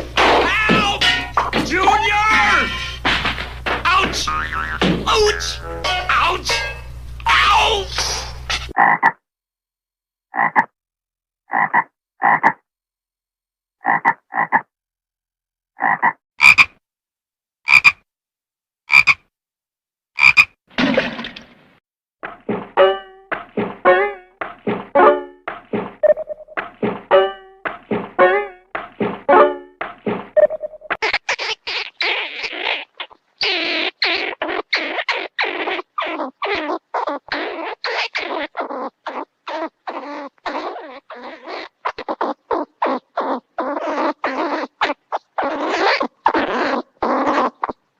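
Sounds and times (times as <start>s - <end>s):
cartoon frog croaks: 3.9s - 6.4s, 8.7s - 9.2s, 10.3s - 10.8s, 11.5s - 12.7s, 13.8s - 14.7s, 15.8s - 16.8s, 17.7s - 18.0s, 18.9s - 19.3s, 20.2s - 20.6s, 30.4s - 47.9s.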